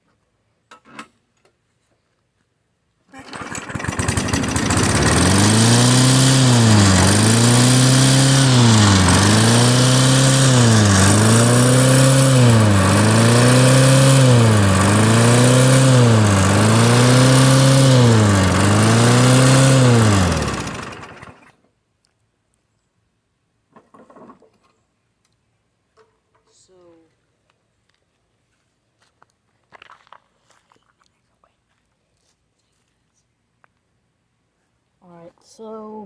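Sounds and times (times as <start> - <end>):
lawn mower engine surging: 3.2 - 21.5.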